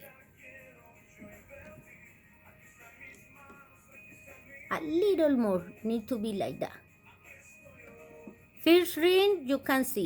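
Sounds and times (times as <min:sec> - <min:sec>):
faint background music: 0:00.0 - 0:10.0.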